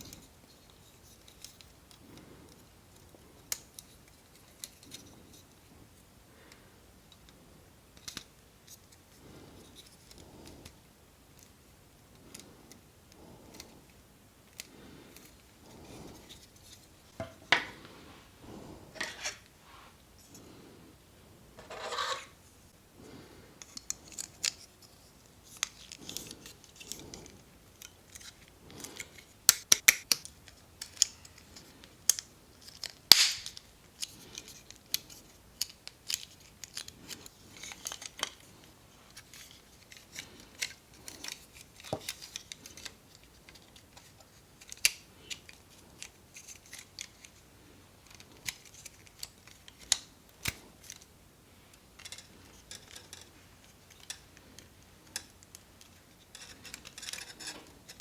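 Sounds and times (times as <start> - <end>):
plastic clicks and snips: 28.9 - 36.9.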